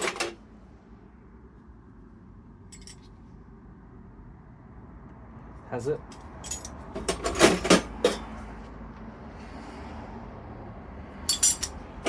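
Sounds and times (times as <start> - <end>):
metal spanners clinking: 2.7 - 3.1, 6.1 - 8.3, 11.3 - 11.8.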